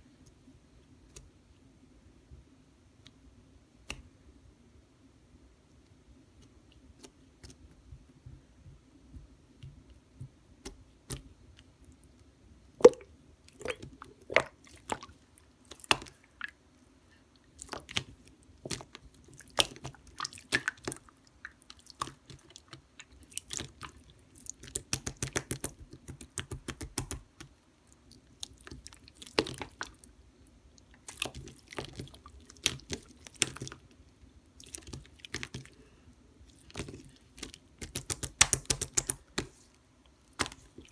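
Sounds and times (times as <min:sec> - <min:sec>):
hands squishing slime: 0:12.8 - 0:16.6, 0:17.5 - 0:30.1, 0:30.8 - 0:34.0, 0:34.6 - 0:35.8, 0:36.4 - 0:40.9.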